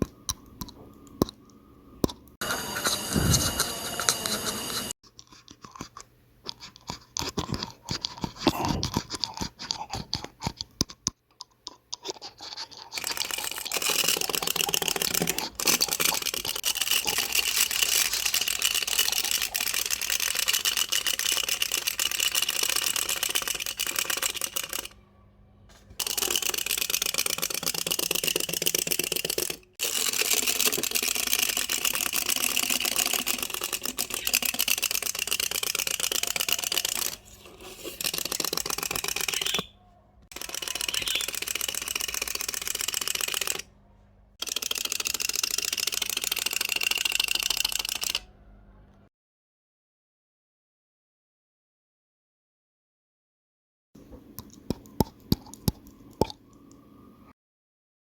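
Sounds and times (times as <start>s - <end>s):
teeth grinding: 3.6s - 24.9s, 54.4s - 56.7s.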